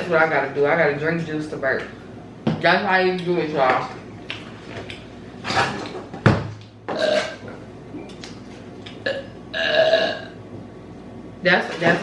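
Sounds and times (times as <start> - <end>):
person burping: 6.9 - 7.4, 9.0 - 10.4.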